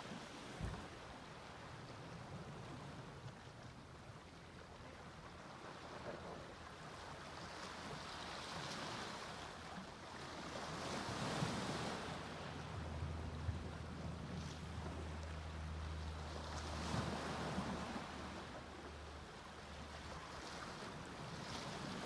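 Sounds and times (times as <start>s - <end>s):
sea waves breaking on beach: 6.7s - 22.0s
low steady rumble: 9.8s - 22.0s.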